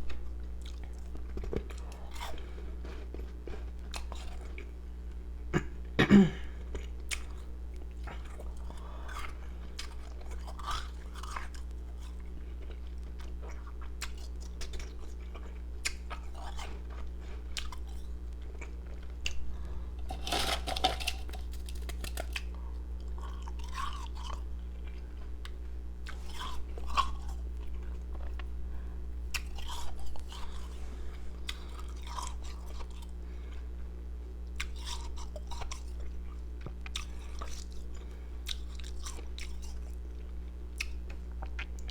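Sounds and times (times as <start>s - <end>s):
chewing and crunching ice: 0.0s - 4.8s, 6.6s - 28.5s, 29.2s - 33.8s, 34.4s - 41.9s
steady low hum: 0.0s - 41.9s.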